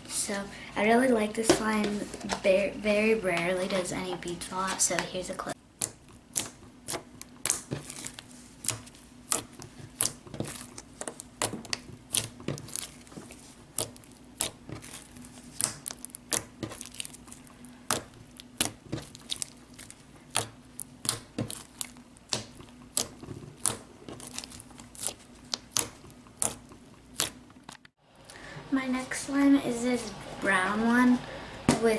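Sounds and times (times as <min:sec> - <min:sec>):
slime popping and crackling: 0:05.7 - 0:27.7.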